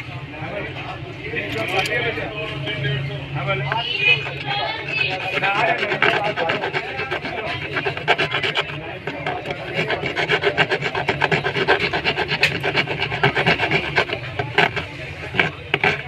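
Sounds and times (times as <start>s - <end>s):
brush scrubbing rasping: 3.8s - 16.0s.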